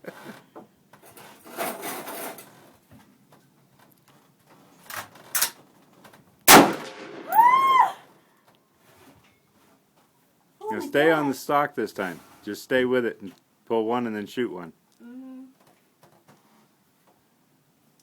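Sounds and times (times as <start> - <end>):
faint rustle: 0.0 - 6.4, 8.1 - 13.5, 14.9 - 17.3
loud gunshot: 6.5 - 7.3
woman shrieking: 7.3 - 8.0, 10.6 - 11.1.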